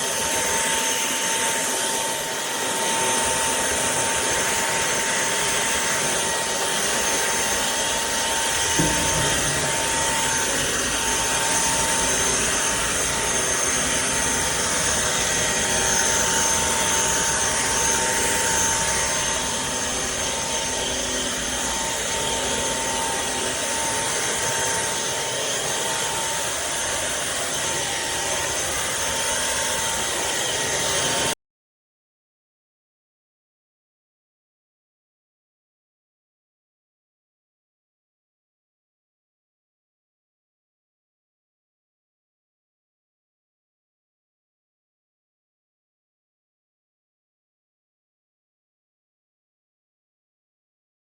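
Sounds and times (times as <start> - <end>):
stick vacuum running: 0.0 - 31.3
brief knock: 8.8 - 9.8.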